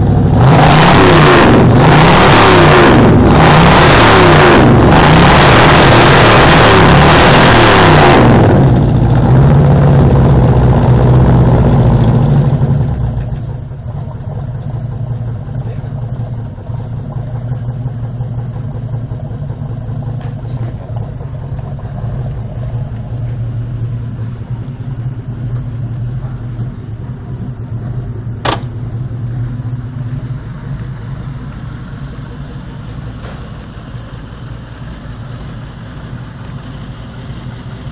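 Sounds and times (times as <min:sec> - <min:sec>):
car engine revving and idling: 0:00.0 - 0:37.9
sharp click: 0:28.4 - 0:28.8.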